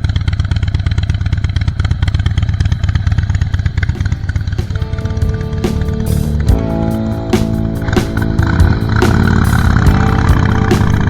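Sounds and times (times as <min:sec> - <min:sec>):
motorcycle engine running: 0:00.0 - 0:11.0
background music: 0:04.0 - 0:11.0.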